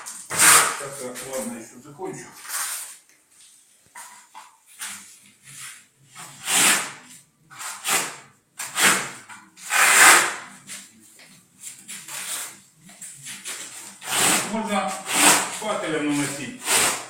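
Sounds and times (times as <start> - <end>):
trowel scraping plaster: 0.0 - 1.5, 2.4 - 3.0, 4.8 - 10.9, 13.2 - 17.0.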